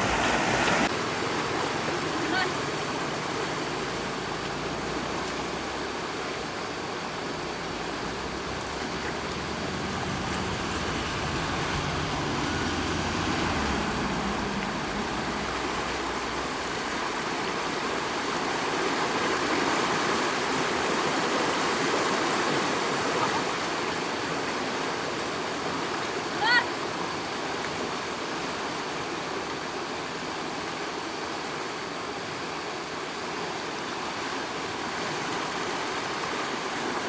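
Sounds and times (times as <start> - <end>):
low engine hum: 0.0 - 18.5
rushing water: 0.0 - 37.0.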